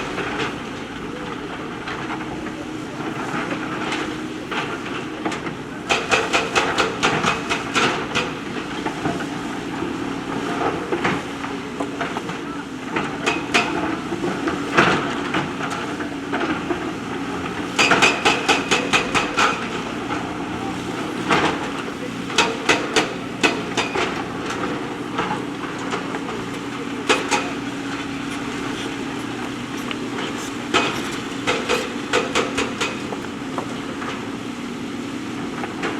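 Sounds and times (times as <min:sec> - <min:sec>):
diesel engine running: 0:00.0 - 0:35.9
stones clanking and knocking: 0:21.2 - 0:34.0.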